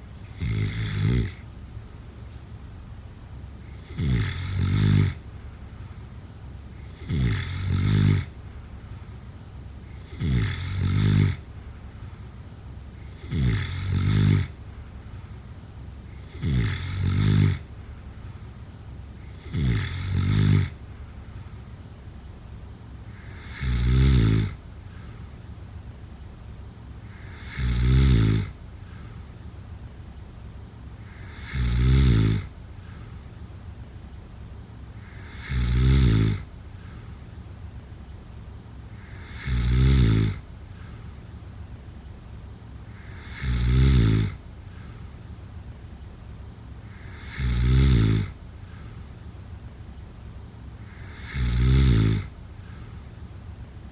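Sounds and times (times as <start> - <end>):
person snoring: 0.3 - 1.4, 3.7 - 5.2, 6.8 - 8.3, 10.0 - 11.4, 13.2 - 14.5, 16.3 - 17.6, 19.4 - 20.8, 23.1 - 24.6, 27.1 - 28.6, 31.0 - 32.5, 35.0 - 37.0, 39.0 - 40.4, 42.9 - 44.4, 46.9 - 49.0, 50.9 - 52.9.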